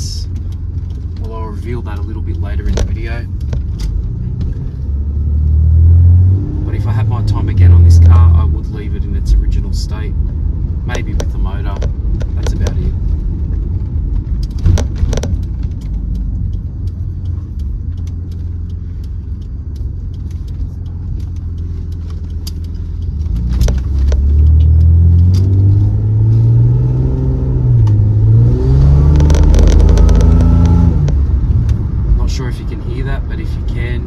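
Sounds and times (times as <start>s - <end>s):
car engine accelerating: 0.0s - 34.0s
supercharger whine: 22.3s - 32.0s.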